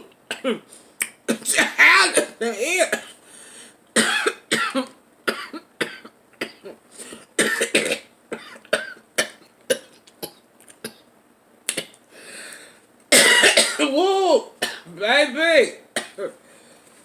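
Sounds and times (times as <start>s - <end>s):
breathy huffs and coughs: 3.0s - 11.0s.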